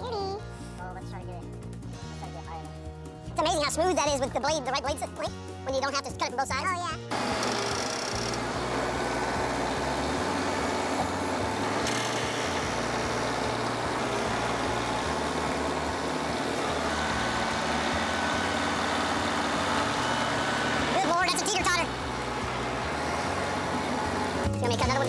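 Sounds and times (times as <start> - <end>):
chainsaw engine running: 7.1 - 25.0.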